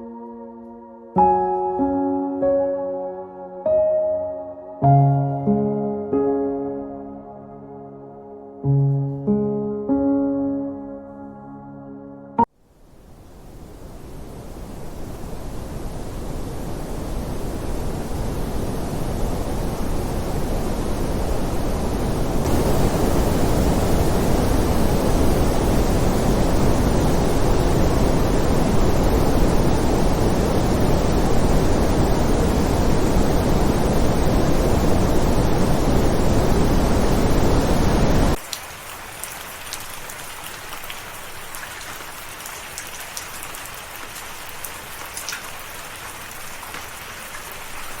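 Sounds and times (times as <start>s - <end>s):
heavy rain: 13.2s - 48.0s
raindrops ticking: 38.3s - 48.0s.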